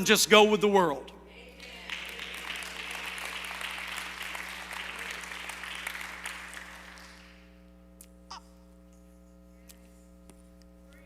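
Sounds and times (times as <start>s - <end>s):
congregation applauding: 1.6s - 7.5s.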